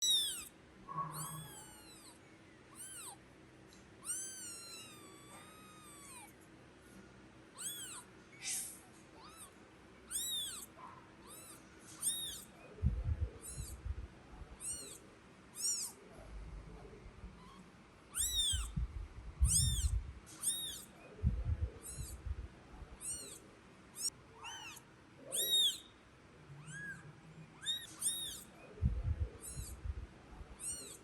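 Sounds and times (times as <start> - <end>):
kitten mewing: 0.0 - 0.5, 1.1 - 3.2, 4.0 - 6.4, 7.6 - 15.0, 15.6 - 16.1, 17.2 - 23.4, 24.0 - 25.8, 26.6 - 31.0
low bumping rumble: 12.8 - 14.6, 18.2 - 20.2, 21.2 - 23.0, 28.8 - 30.6.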